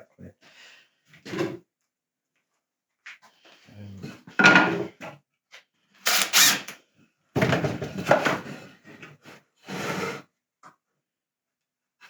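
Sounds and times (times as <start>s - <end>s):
impact driver driving screws into wood: 6.1s - 6.8s.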